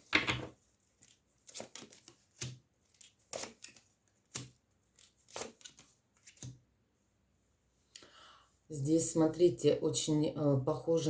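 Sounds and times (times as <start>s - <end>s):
cards tapping on a table: 0.1s - 0.5s.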